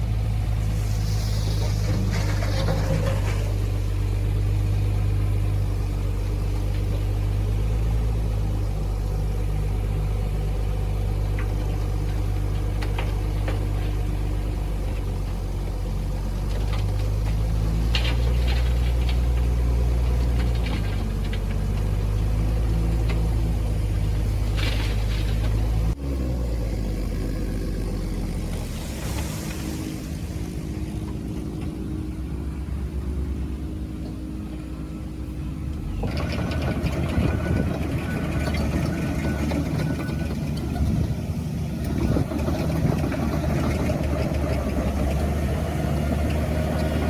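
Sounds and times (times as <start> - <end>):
heavy diesel engine running: 0.0 - 47.0
metal clanks and rattles: 1.7 - 3.8.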